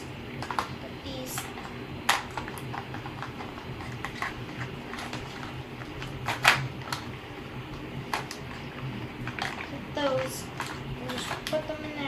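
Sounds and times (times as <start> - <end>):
plastic toys clicking and tapping: 1.3 - 7.1, 9.3 - 12.0.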